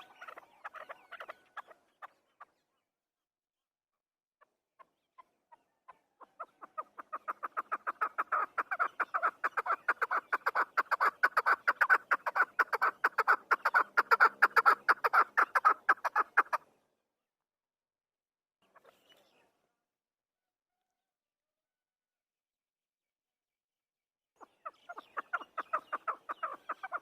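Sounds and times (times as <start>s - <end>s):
partridge clucking calls: 0.0s - 2.7s, 4.4s - 16.8s, 18.6s - 19.2s, 24.4s - 27.0s.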